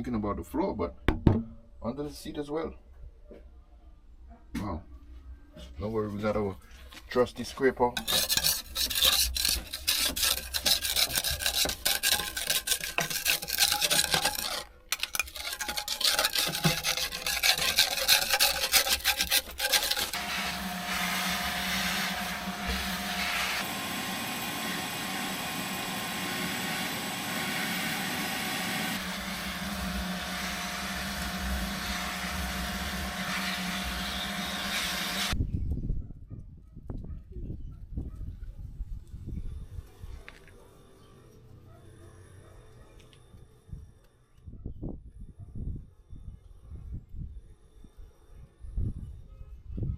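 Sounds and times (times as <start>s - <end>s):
hand scraper rasping: 8.0s - 23.7s, 25.3s - 35.4s.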